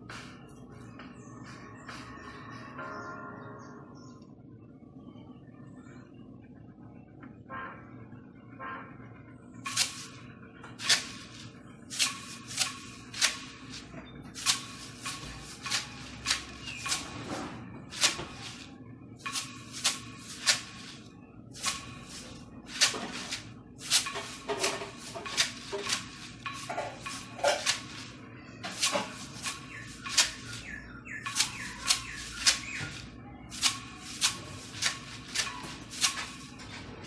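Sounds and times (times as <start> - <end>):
maracas shaken: 21.6 - 36.7.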